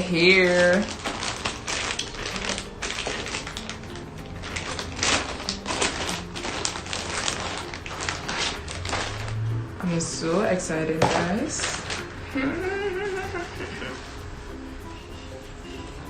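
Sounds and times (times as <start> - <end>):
plastic packaging crinkling: 0.0 - 9.5, 11.0 - 12.2
quiet background music: 0.0 - 16.0.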